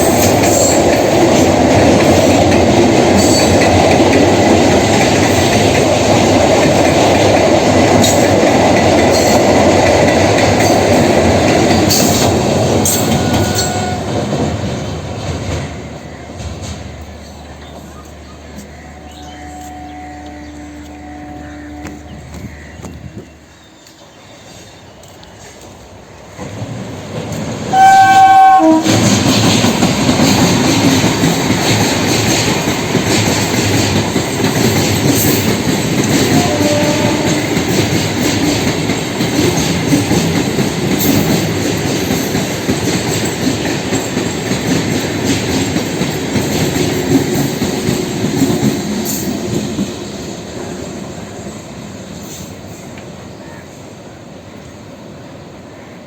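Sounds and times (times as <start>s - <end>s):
train wheels rumbling on track: 0.0s - 56.0s
train horn blast: 12.9s - 14.3s, 18.7s - 23.2s, 27.7s - 29.1s, 36.2s - 37.8s.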